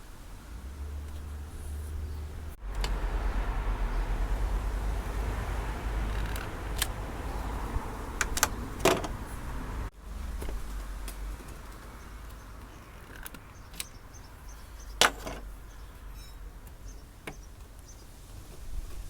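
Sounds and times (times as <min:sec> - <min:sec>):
steady low rumble: 0:00.0 - 0:11.4
clicks of hand tools and wiring: 0:06.1 - 0:07.0, 0:08.2 - 0:09.2, 0:10.4 - 0:14.2, 0:14.9 - 0:15.5.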